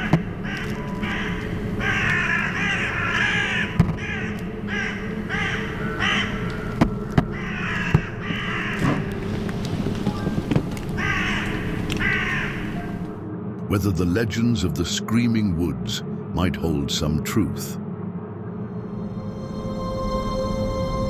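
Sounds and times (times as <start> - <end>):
crows cawing: 0.0 - 13.2.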